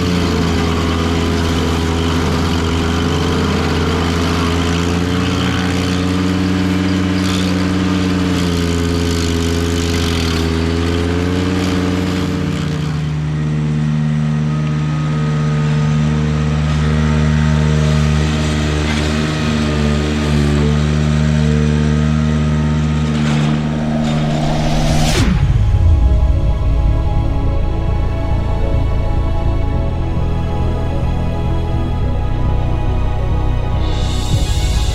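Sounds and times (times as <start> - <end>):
stump grinder chewing wood: 0.0 - 23.4
tractor engine at high speed: 0.0 - 34.9.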